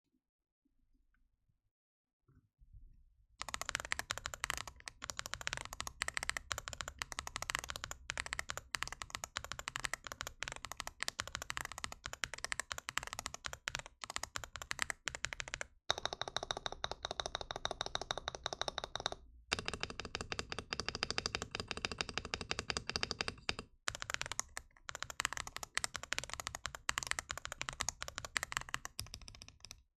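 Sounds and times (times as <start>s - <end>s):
typing on mechanical keyboard: 3.4s - 29.9s.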